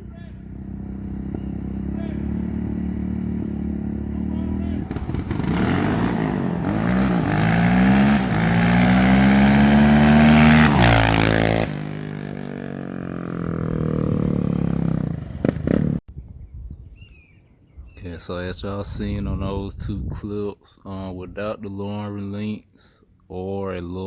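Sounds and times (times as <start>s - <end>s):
noisy rush: 0.0s - 15.9s
engine at full throttle: 0.0s - 16.0s.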